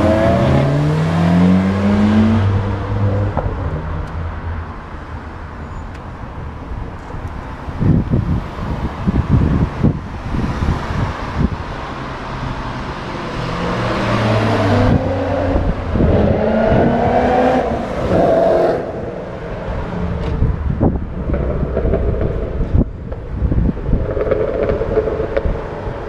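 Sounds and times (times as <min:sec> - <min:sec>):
car engine accelerating hard: 0:00.0 - 0:03.8, 0:12.8 - 0:26.0.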